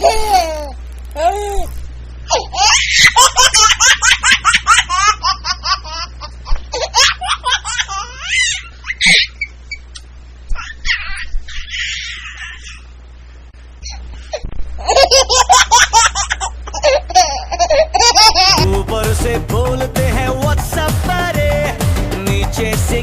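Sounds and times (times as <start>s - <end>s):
person laughing high-pitched: 0.0s - 1.8s, 16.8s - 18.7s.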